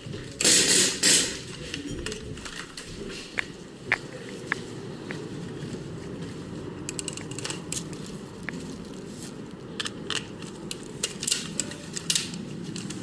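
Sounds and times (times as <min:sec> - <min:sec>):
handling noise: 0:00.0 - 0:13.0
sharp clicks and cracks: 0:06.9 - 0:08.6, 0:09.8 - 0:13.0.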